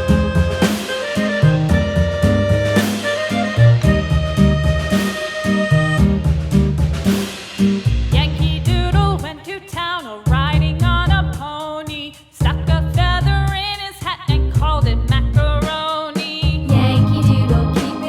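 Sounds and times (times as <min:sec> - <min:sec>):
pop song with heavy bass beat: 0:08.1 - 0:18.0.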